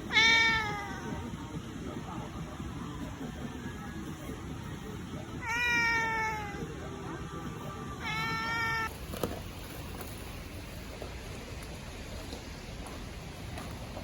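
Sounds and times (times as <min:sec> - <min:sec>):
cat meowing: 0:00.0 - 0:01.3, 0:05.4 - 0:06.7, 0:08.0 - 0:08.9.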